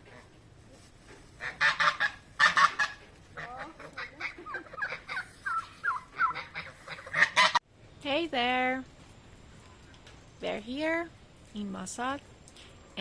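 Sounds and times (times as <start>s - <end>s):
geese honking: 1.4s - 7.6s.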